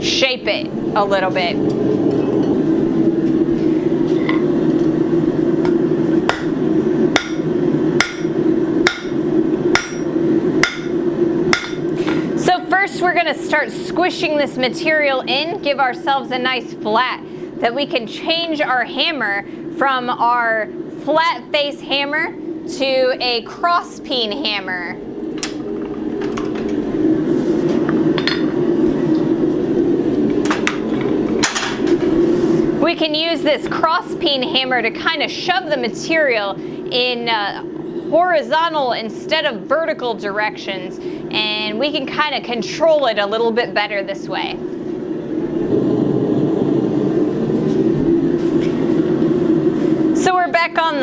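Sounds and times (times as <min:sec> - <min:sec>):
hammer striking steel on anvil: 0:06.3 - 0:06.5, 0:07.2 - 0:08.3, 0:08.9 - 0:09.2, 0:09.8 - 0:10.9, 0:11.6 - 0:11.8
steady drone: 0:43.8 - 0:50.5.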